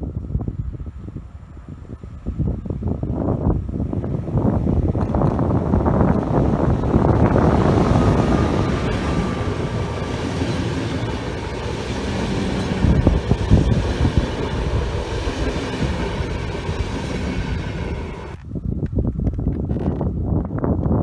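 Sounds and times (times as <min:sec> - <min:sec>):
train passing on track: 0:02.3 - 0:18.4.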